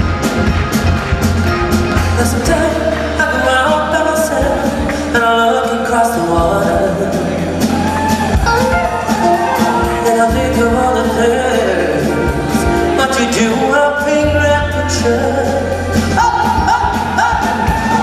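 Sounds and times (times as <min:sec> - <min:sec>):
drum beat: 0:00.0 - 0:05.2, 0:06.4 - 0:11.2, 0:14.2 - 0:18.0
bass: 0:00.0 - 0:18.0
live pop band playing: 0:00.0 - 0:18.0
man singing: 0:02.0 - 0:07.8, 0:09.6 - 0:18.0.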